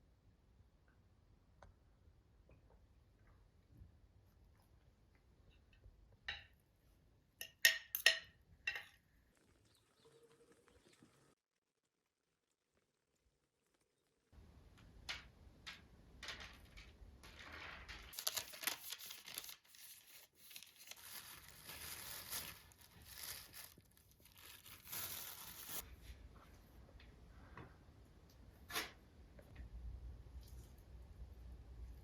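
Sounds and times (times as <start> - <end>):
crinkling and tearing: 16.2 - 25.8.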